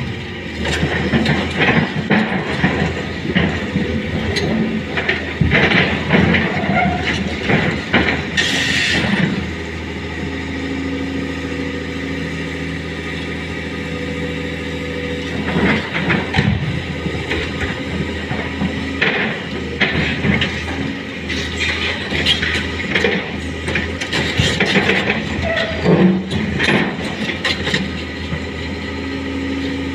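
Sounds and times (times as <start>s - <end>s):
excavator engine and hydraulics: 0.0s - 29.9s
metal clanks and knocks: 0.6s - 9.5s, 15.2s - 28.5s.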